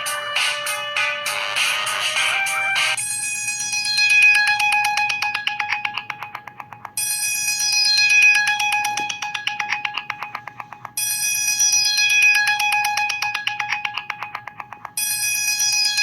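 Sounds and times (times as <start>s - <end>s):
bell-like phone ringtone: 2.2s - 6.3s, 7.0s - 14.0s, 15.0s - 16.0s.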